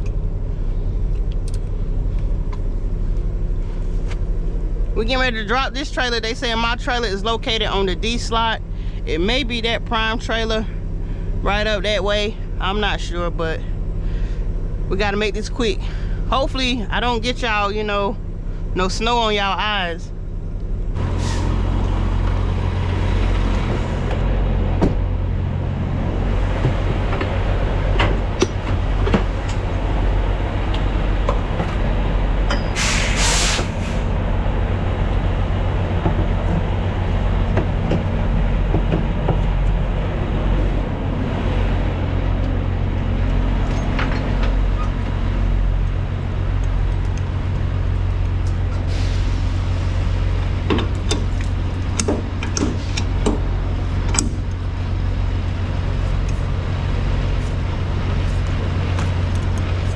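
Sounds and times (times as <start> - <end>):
diesel truck engine idling: 0.0 - 59.9
compressed air hiss: 32.8 - 34.1.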